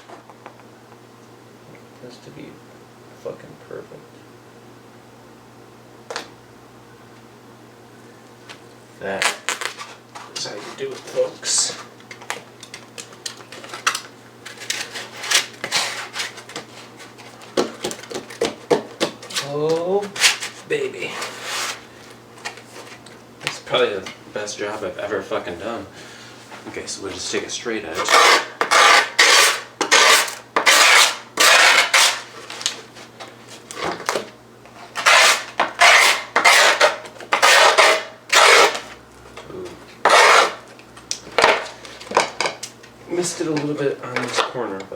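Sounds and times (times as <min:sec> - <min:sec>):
grip tape scraping: 0:09.2 - 0:10.8, 0:12.6 - 0:17.2, 0:28.0 - 0:32.9, 0:34.8 - 0:38.9, 0:40.0 - 0:40.6.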